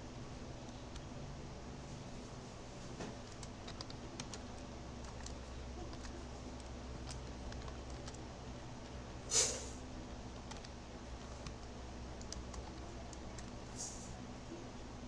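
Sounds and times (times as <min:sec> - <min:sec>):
low steady hum: 0:00.0 - 0:15.0
typing on computer keyboard: 0:03.1 - 0:08.2, 0:10.3 - 0:13.6.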